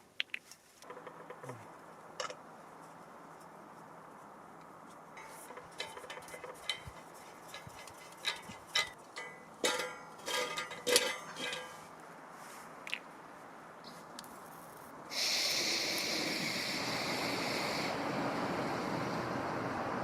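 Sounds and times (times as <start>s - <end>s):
light metal clicks and knocks: 5.2s - 11.9s
ringing metallic clanks: 5.2s - 11.9s.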